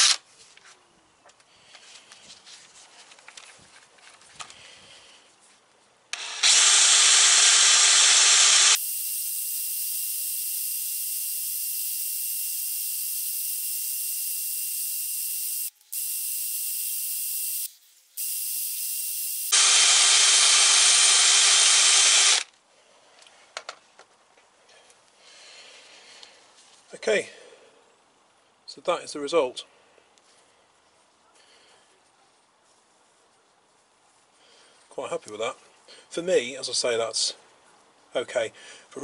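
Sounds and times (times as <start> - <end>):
cordless power tool running: 6.1 - 22.5
thin high hiss: 8.8 - 19.5.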